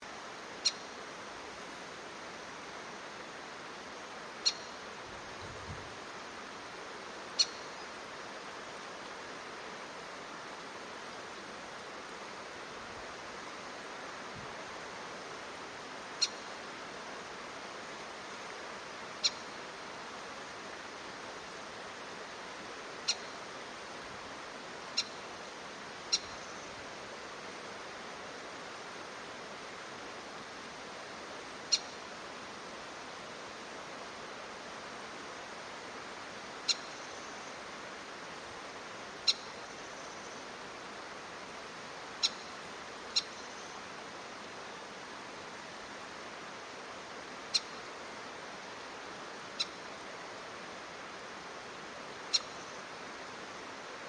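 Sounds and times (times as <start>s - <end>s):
steady hiss: 0.0s - 54.0s
bird high-pitched call notes: 4.4s - 4.8s.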